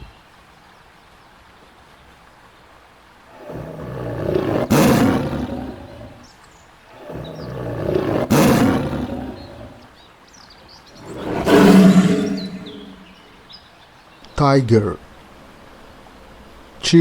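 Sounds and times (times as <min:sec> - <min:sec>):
tiger roaring: 0:03.3 - 0:06.3, 0:06.9 - 0:09.9, 0:11.0 - 0:13.1.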